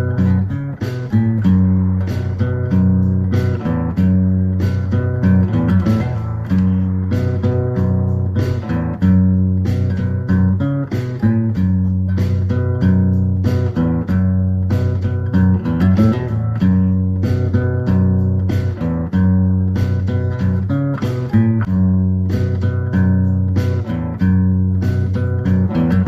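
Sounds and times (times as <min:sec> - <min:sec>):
plucked guitar music with beat: 0:00.0 - 0:26.0.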